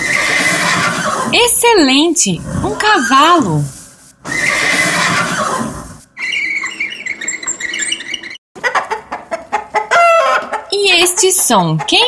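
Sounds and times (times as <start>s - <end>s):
horse neighing: 0.0s - 1.4s, 2.4s - 3.5s, 4.2s - 8.0s.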